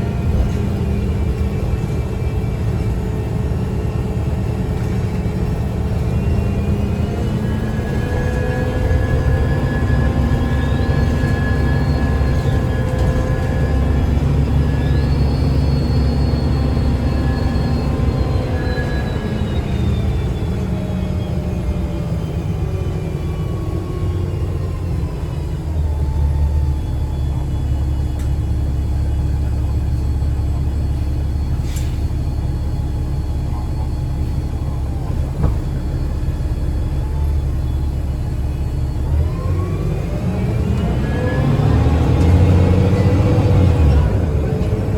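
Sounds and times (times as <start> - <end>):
bus drivetrain whine: 0.0 - 44.9
low engine rumble: 0.0 - 44.9.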